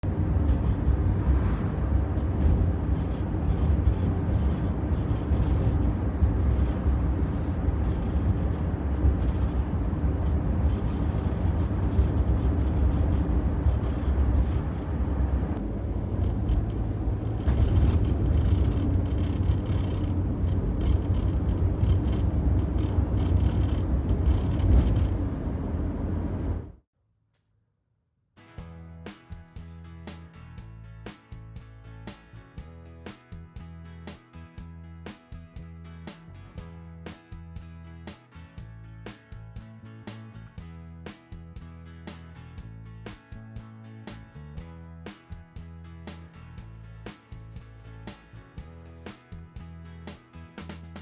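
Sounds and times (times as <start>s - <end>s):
road and drivetrain rumble: 0.0s - 26.8s
seat creaking and rattling: 16.2s - 25.5s.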